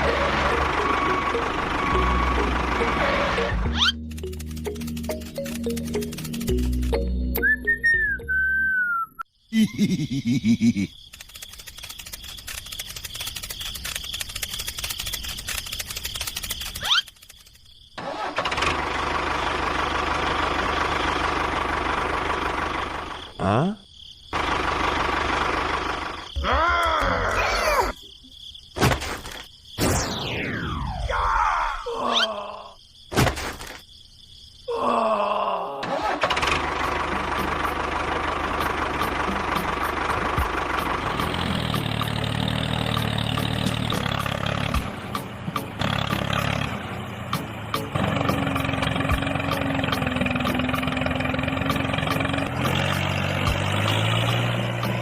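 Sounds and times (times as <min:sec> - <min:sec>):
construction vehicle engine idling: 0:00.0 - 0:03.6, 0:18.5 - 0:23.3, 0:24.4 - 0:26.4, 0:36.0 - 0:55.0.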